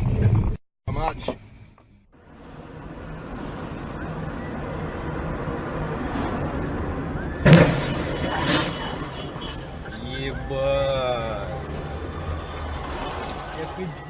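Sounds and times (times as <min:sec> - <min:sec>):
car engine and road noise: 0:00.0 - 0:14.0
car collision bangs: 0:07.4 - 0:09.1.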